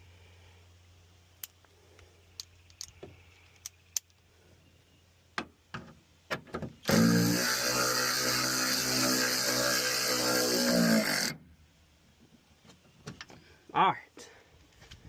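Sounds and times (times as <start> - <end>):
power tool running: 6.8 - 11.4.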